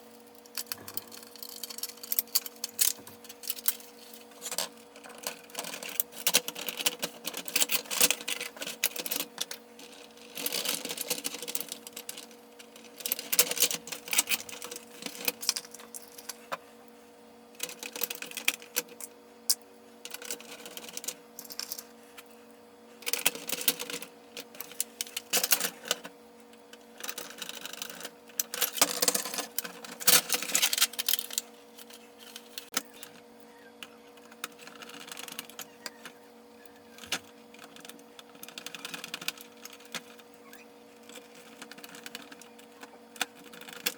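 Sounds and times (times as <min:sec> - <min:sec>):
steady low hum: 0:00.0 - 0:06.3
plastic toy parts clicking and rattling: 0:00.4 - 0:16.6, 0:17.6 - 0:21.9, 0:23.0 - 0:26.1, 0:26.7 - 0:33.2, 0:33.8 - 0:36.2, 0:36.9 - 0:43.9.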